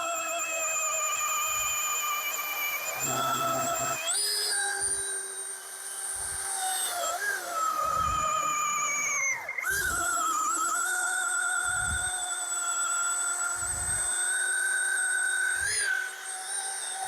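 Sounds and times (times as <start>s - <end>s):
chainsaw cutting log: 2.9s - 4.0s.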